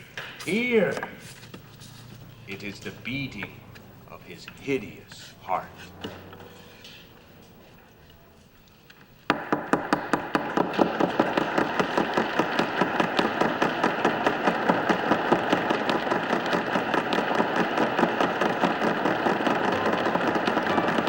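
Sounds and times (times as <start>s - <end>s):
rapid sharp knocks: 9.3s - 21.0s.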